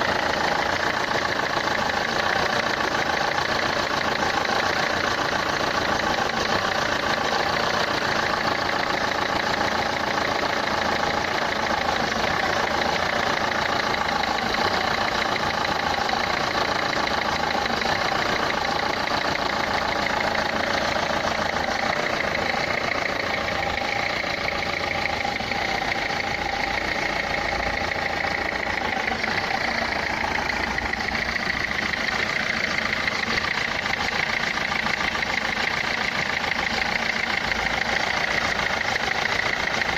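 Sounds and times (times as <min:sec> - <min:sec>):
diesel engine idling: 0:00.0 - 0:39.9.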